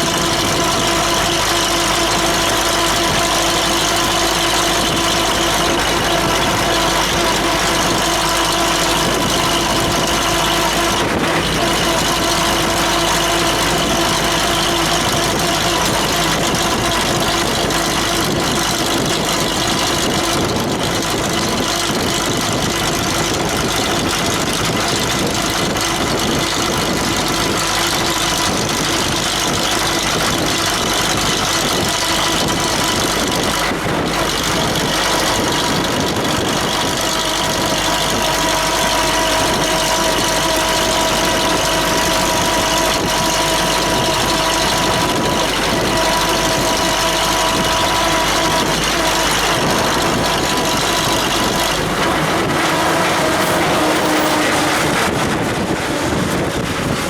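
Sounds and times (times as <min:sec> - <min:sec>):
street traffic engines: 0:00.0 - 0:57.0
steady tonal hum: 0:32.3 - 0:57.0
dense rushing noise: 0:32.5 - 0:57.0.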